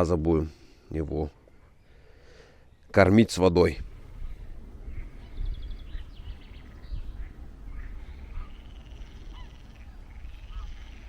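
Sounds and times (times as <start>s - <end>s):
small birds chirping: 1.1s - 11.0s
bird trill: 4.9s - 11.0s.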